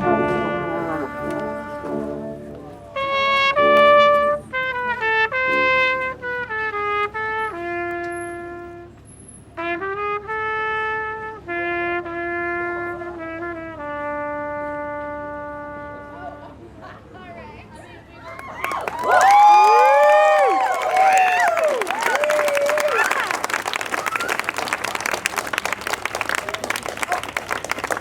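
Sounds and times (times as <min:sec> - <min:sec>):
solo trumpet melody: 0:00.0 - 0:16.6.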